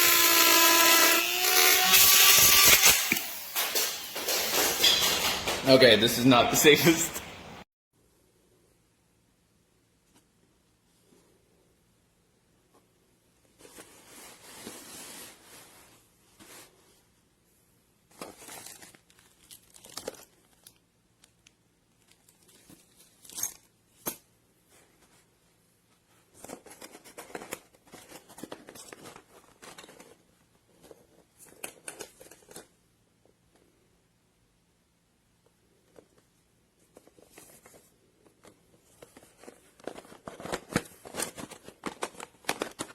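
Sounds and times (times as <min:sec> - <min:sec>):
plastic bottle crinkling: 0:18.2 - 0:20.8.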